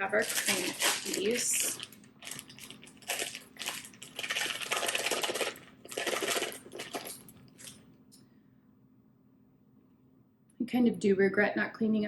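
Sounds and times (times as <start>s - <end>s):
rustling and scraping: 0.2s - 7.8s.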